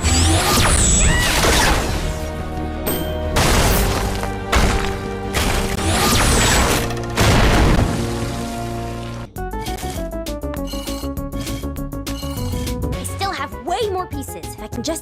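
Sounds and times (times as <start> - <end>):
heavy booming impact crashes: 7.1 - 8.7.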